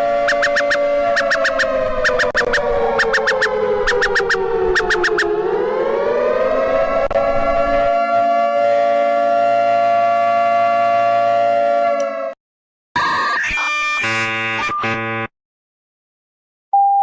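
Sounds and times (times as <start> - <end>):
emergency warning siren: 0.0 - 12.4.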